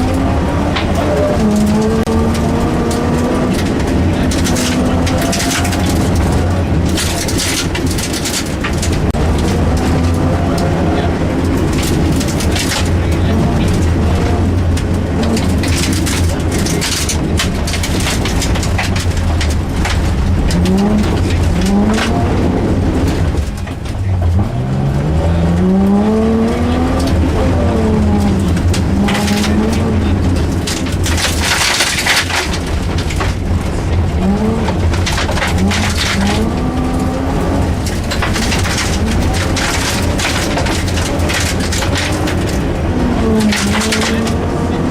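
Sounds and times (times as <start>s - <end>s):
rally car engine revving: 0.0s - 44.9s.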